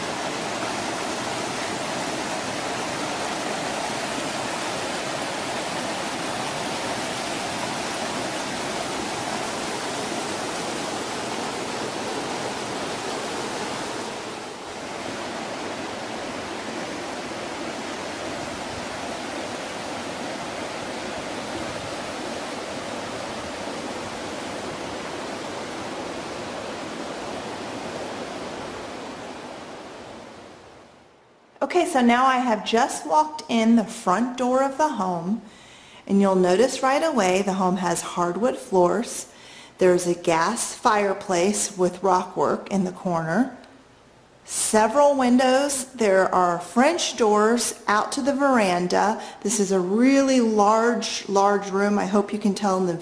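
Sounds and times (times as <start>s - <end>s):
creek cascading over waterfalls: 0.0s - 30.8s.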